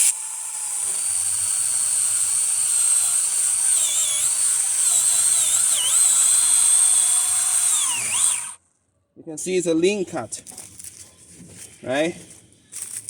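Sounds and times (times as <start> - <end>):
battery chainsaw cutting wood: 0.0 - 8.6.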